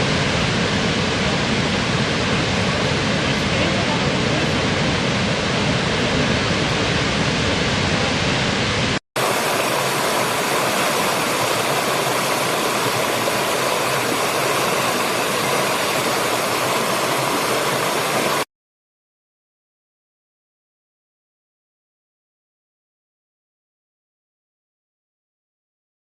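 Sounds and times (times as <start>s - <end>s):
waterfall rushing: 0.0s - 18.5s.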